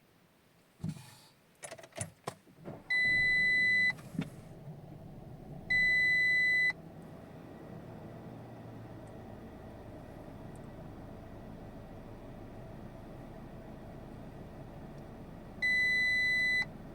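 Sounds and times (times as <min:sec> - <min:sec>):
thump: 0:00.8 - 0:01.1, 0:04.0 - 0:04.5
low steady hum: 0:02.6 - 0:16.9.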